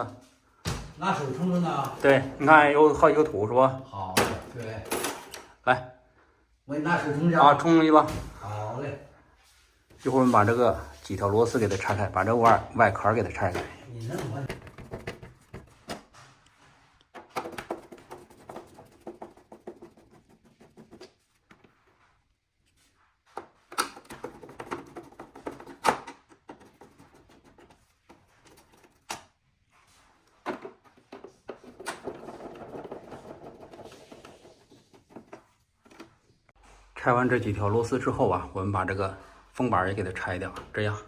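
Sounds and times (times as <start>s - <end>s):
screws and plastic rattling: 23.8s - 29.2s, 30.4s - 36.1s.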